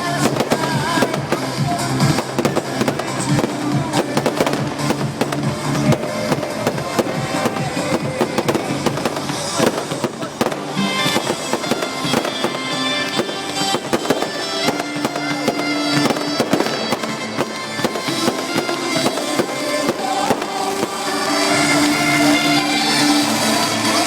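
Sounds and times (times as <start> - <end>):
fireworks bangs and crackles: 0.0 - 24.0
music: 0.0 - 24.0.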